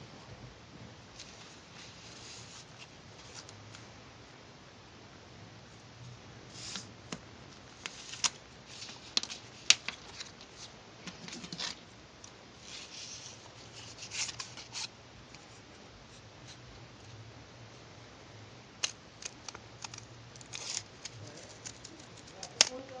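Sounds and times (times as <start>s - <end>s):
hands rustling craft materials: 6.5s - 17.2s, 18.8s - 23.0s.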